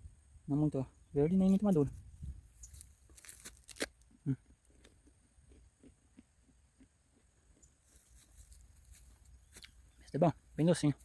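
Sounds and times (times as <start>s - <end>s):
person chewing fruit: 2.6s - 9.9s.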